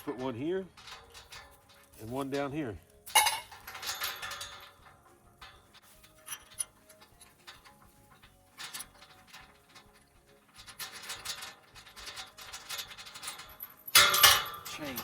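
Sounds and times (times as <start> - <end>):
metal clamp and pipe rattling: 0.0 - 15.0.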